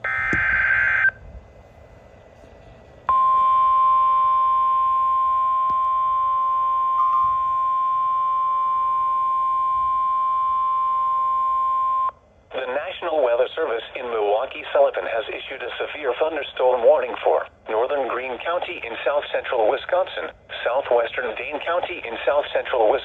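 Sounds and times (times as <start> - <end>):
rapid data tones: 0.0 - 1.2
steady alarm tone: 0.0 - 1.2
faint radio hiss: 12.5 - 23.0.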